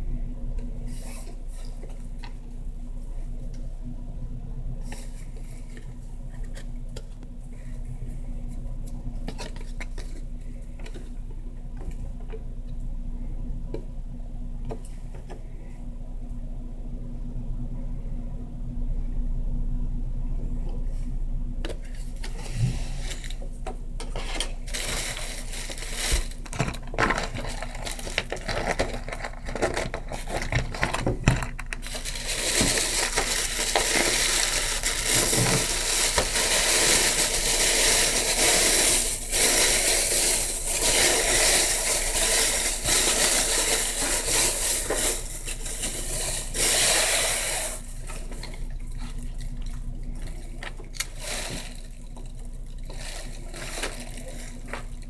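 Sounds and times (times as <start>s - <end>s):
low electrical hum: 0.0s - 55.0s
rustling and scraping: 24.0s - 47.2s.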